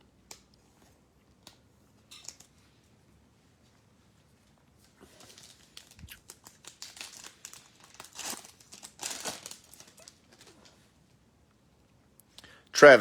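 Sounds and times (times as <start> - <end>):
card pack wrapper tearing and crinkling: 5.1 - 10.7.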